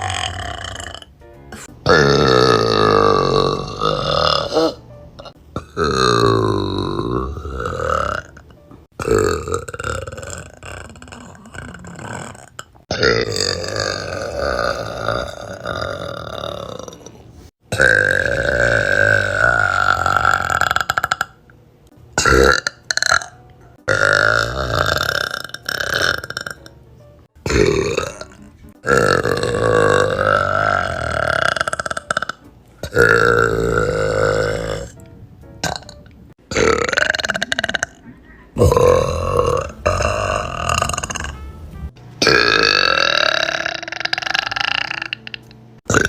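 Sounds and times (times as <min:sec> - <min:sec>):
girls burping: 0:09.0 - 0:21.3, 0:27.5 - 0:35.0, 0:35.6 - 0:38.0, 0:38.6 - 0:41.4, 0:42.2 - 0:46.0.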